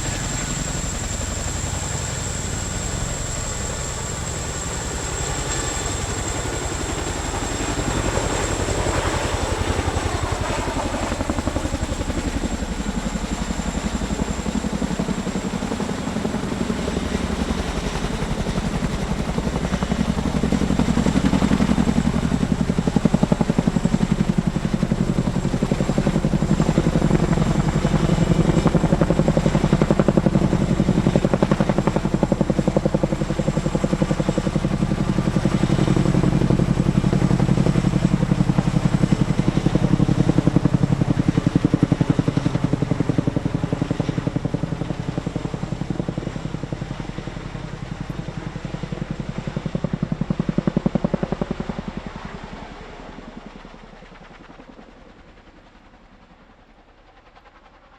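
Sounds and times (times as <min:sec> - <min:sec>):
helicopter rotors thrumming: 0:00.0 - 0:57.9.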